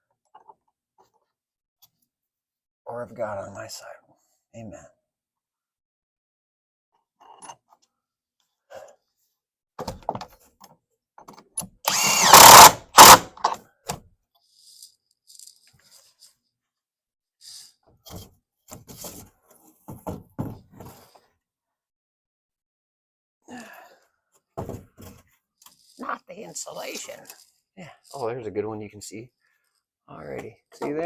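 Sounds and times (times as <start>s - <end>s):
power tool running: 11.9s - 13.6s.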